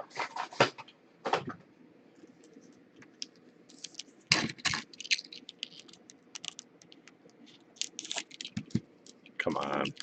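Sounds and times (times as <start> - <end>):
packaging rustling: 2.2 - 10.0
cards clicking and scratching: 2.4 - 10.0.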